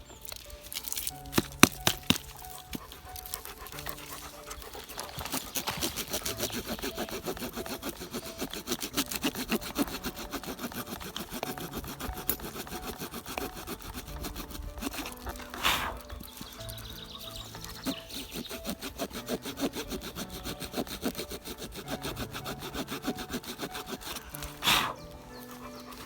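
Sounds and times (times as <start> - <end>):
folding saw cutting log: 0.0 - 26.0.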